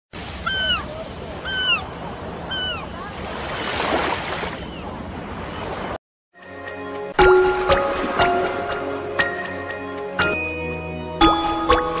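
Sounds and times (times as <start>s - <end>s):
music: 6.4s - 12.0s.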